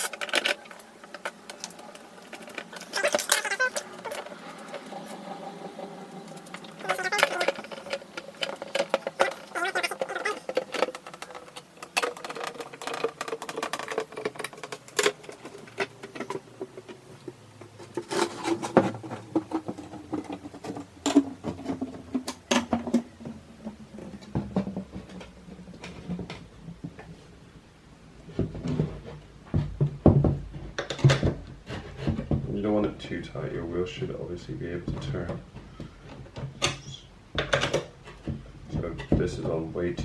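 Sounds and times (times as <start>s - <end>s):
clicks and knocks of handling: 0.0s - 4.9s, 6.3s - 27.2s, 34.9s - 39.6s
skateboard bearings whirring: 0.0s - 21.1s.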